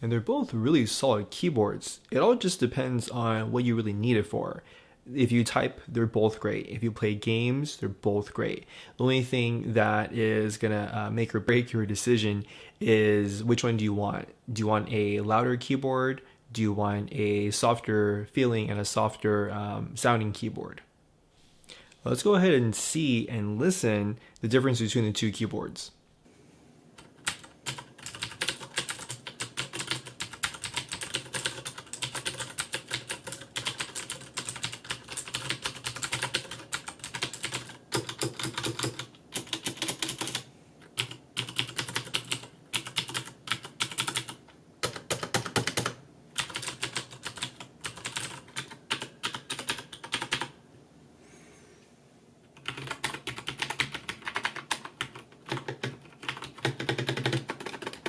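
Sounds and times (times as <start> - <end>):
mechanical keyboard typing: 27.0 - 50.5, 52.6 - 58.0.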